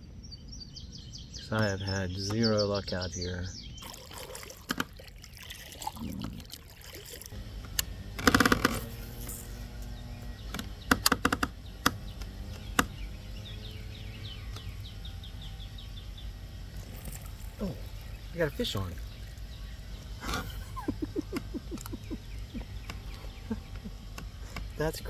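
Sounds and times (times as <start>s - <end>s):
bird chirping: 0.0s - 3.8s, 7.4s - 25.0s
water trickling around boat: 1.5s - 25.0s
rapid clicks: 7.4s - 25.0s.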